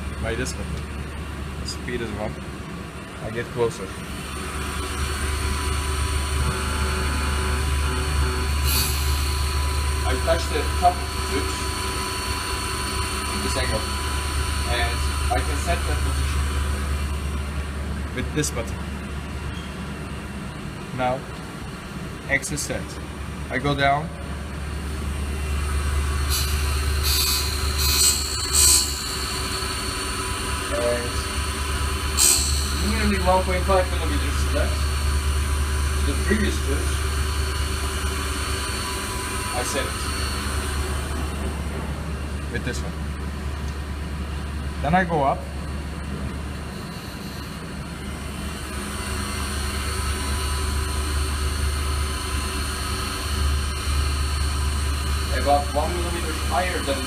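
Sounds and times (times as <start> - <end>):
steady mechanical drone: 0.0 - 57.0
grinding machine humming: 3.8 - 20.9, 24.2 - 57.0
high-pitched whirring bursts: 4.1 - 17.5, 24.8 - 42.8, 46.6 - 57.0.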